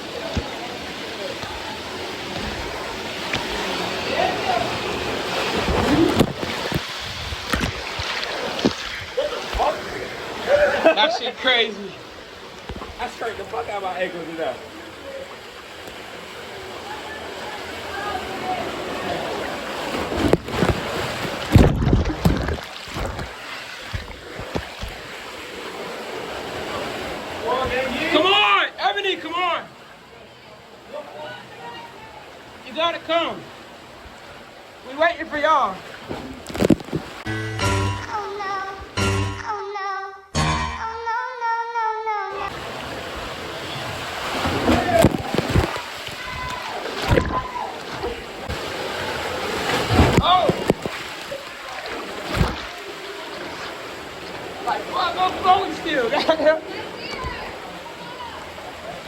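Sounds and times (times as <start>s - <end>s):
water sloshing and splashing: 0.0s - 28.3s, 33.5s - 37.3s, 42.4s - 59.0s
rushing water: 0.0s - 39.5s, 42.3s - 59.0s
music: 37.3s - 39.6s, 40.4s - 41.2s
faint shouts: 46.2s - 47.9s.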